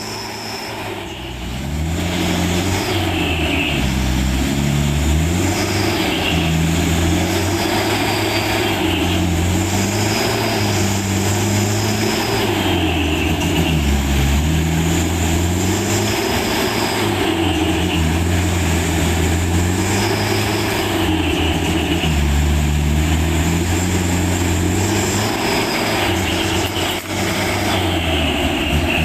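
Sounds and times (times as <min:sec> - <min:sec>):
diesel truck engine labouring: 0:00.0 - 0:29.0.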